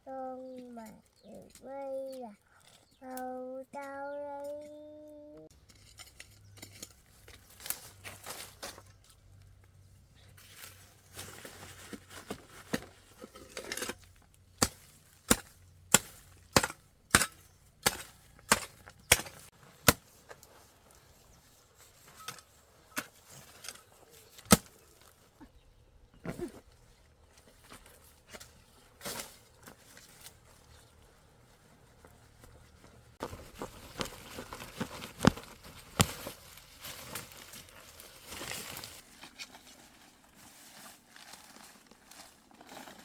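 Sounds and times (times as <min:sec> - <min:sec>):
rustling and scraping: 0:04.4 - 0:25.4, 0:26.2 - 0:43.0
hand tool striking: 0:14.6 - 0:20.0.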